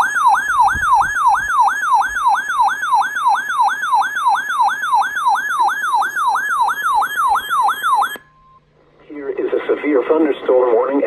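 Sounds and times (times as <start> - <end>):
electronic siren alert tone: 0.0 - 8.6.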